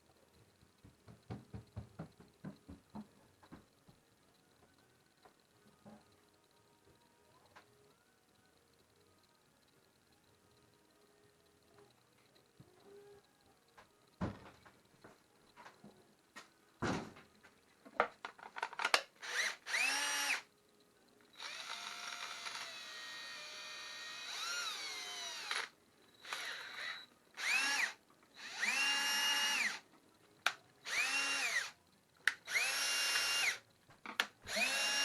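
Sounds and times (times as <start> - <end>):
cordless drill motor whine: 19.2 - 20.5, 21.4 - 29.8, 30.8 - 33.6, 34.5 - 35.0.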